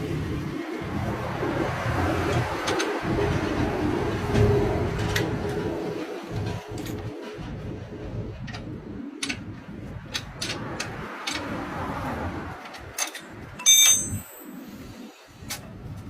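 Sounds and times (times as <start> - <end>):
bell-like metallic ring: 13.6 - 14.6.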